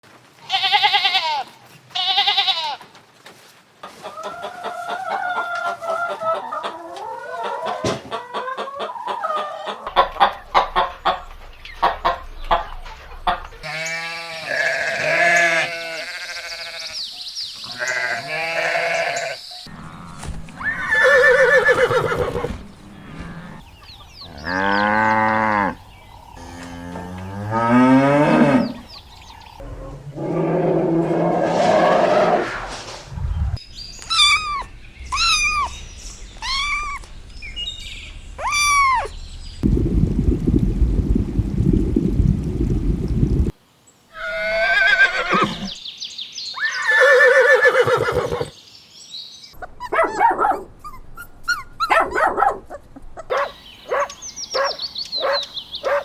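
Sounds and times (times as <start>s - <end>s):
goats bleating: 0.4s - 2.8s, 13.6s - 17.0s, 17.7s - 23.6s
sheep bleating: 0.4s - 2.8s, 13.6s - 17.0s, 17.7s - 20.1s.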